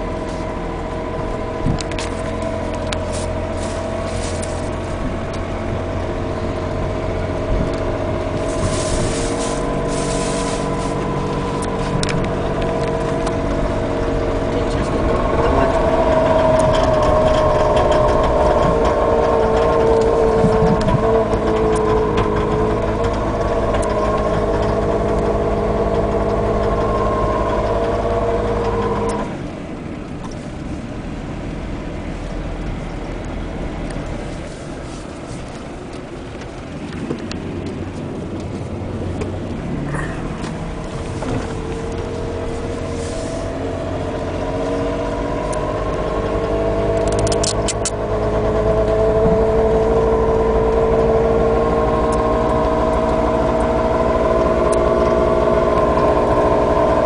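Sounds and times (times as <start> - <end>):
car engine running: 0.0 - 57.0.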